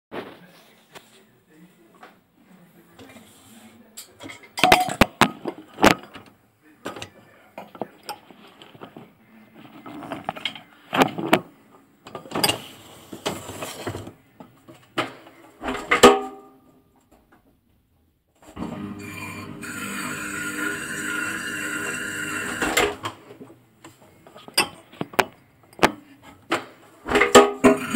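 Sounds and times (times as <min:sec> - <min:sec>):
clicks and knocks of handling: 0:04.0 - 0:16.3, 0:23.0 - 0:27.6.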